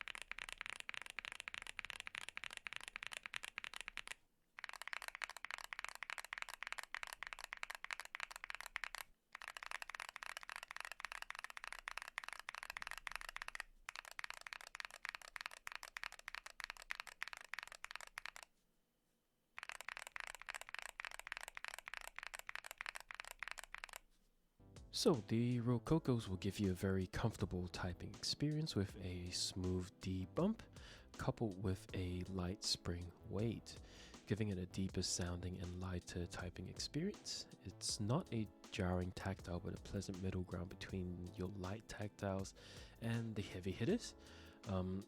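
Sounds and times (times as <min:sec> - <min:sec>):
mechanical keyboard typing: 0:00.0 - 0:18.5, 0:19.6 - 0:24.0.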